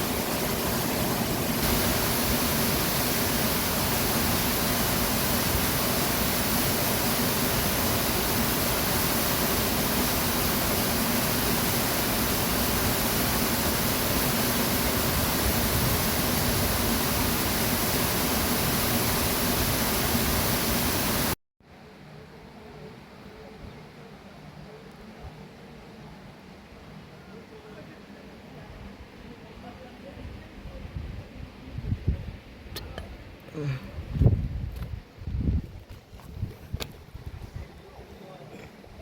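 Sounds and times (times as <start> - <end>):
waterfall rushing: 0.0 - 21.4.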